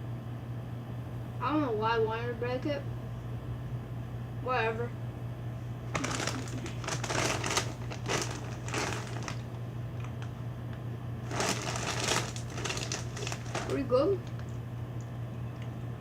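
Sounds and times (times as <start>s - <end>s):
crunching crispy snack: 5.9s - 10.3s, 11.2s - 14.6s.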